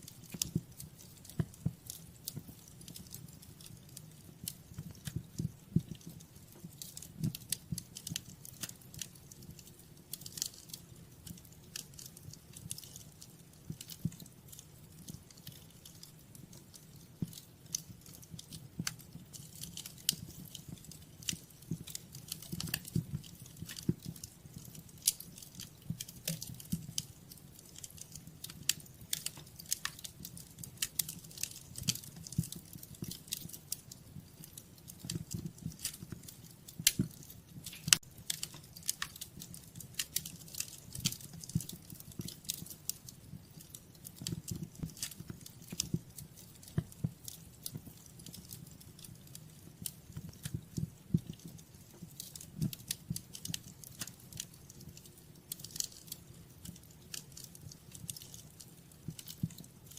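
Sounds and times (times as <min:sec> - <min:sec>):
fire popping: 0:00.0 - 0:59.9
flames rumbling: 0:00.0 - 0:59.9
wood fire crackling: 0:00.0 - 0:59.9.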